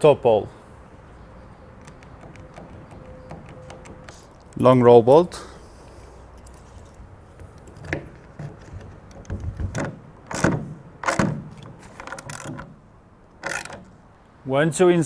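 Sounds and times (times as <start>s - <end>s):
knocks on bolt: 9.1s - 11.7s.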